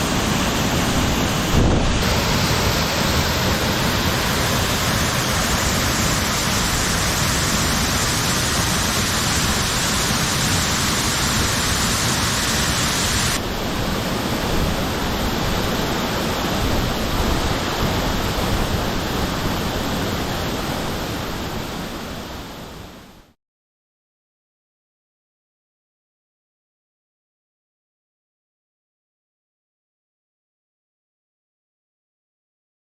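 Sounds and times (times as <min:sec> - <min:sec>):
waterfall splashing: 0:00.0 - 0:22.6.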